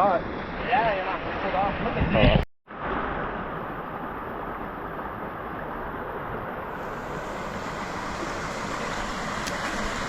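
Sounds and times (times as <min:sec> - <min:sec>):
creek water rushing over rock: 0:06.1 - 0:10.0.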